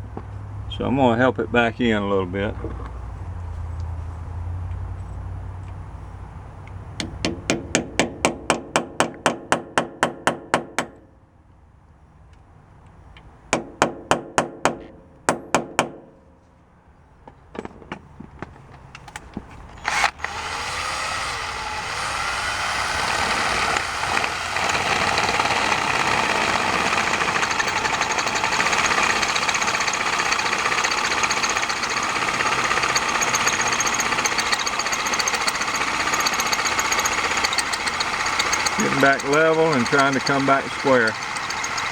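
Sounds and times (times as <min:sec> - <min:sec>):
power drill boring: 0:19.8 - 0:41.9.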